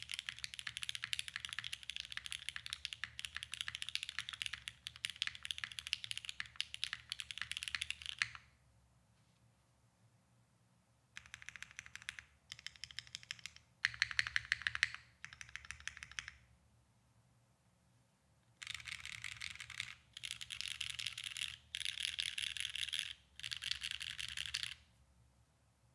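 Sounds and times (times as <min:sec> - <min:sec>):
mechanical keyboard typing: 0:00.0 - 0:08.4, 0:11.2 - 0:16.4, 0:18.6 - 0:24.8.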